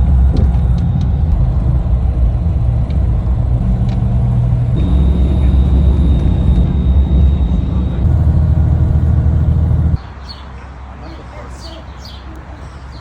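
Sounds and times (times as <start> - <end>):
vehicle engine rumbling: 0.0 - 10.0
thin high tone: 4.8 - 10.0.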